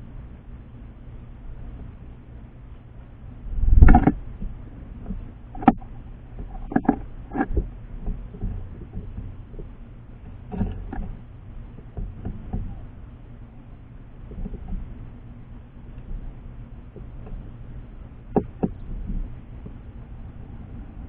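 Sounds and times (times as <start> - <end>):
birds pecking seed on feeder: 3.7 - 13.4.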